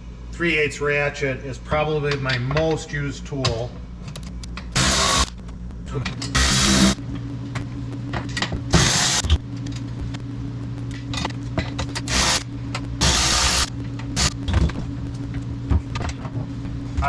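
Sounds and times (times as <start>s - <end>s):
low hum: 2.8s - 17.0s
cordless ratchet running: 4.8s - 5.3s, 6.2s - 7.0s, 11.9s - 14.4s.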